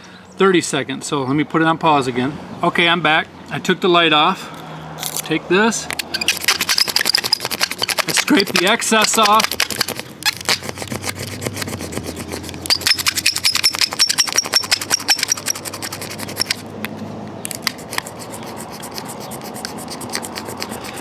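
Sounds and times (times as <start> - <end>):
high thin squeal: 6.0 - 16.7
scraper on windshield glass: 6.0 - 16.7, 17.5 - 21.0.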